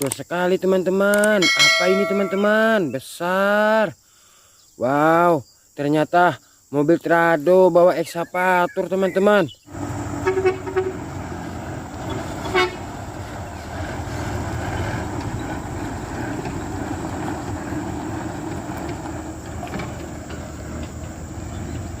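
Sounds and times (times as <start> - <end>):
vehicle engine running: 9.7 - 22.0
short horn toot: 10.1 - 11.3, 12.4 - 13.0.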